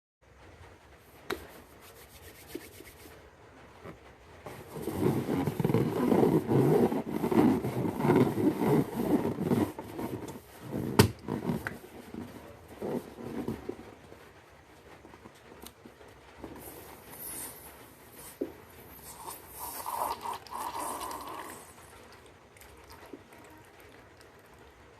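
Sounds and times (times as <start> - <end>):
balloon fluttering noise: 4.4 - 15.2, 15.9 - 22.1.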